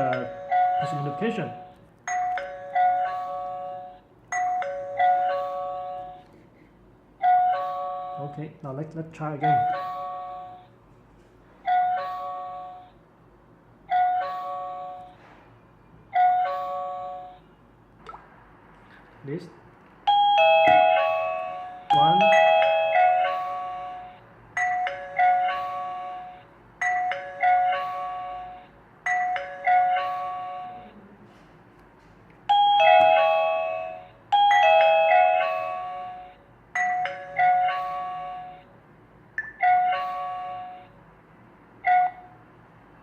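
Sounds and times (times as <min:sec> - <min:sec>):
electronic doorbell chime: 0:00.0 - 0:06.2, 0:07.2 - 0:08.4, 0:09.4 - 0:10.6, 0:11.7 - 0:13.0, 0:13.9 - 0:15.1, 0:16.2 - 0:17.4, 0:20.1 - 0:30.9, 0:32.5 - 0:38.7, 0:39.4 - 0:41.0, 0:41.8 - 0:42.4.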